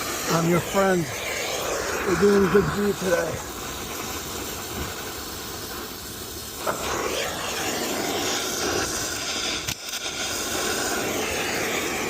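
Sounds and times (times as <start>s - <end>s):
torch flame hissing: 0.0s - 12.0s
small pop: 9.6s - 9.9s.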